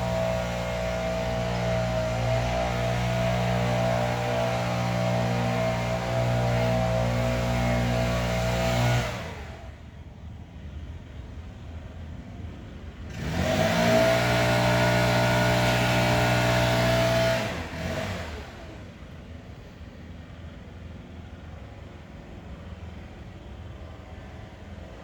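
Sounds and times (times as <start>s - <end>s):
leaf blower engine revving: 0.0s - 9.7s, 13.1s - 19.0s.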